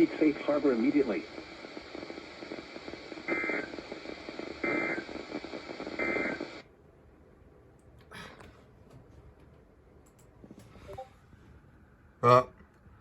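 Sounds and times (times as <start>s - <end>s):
radio receiver hiss: 0.0s - 6.7s.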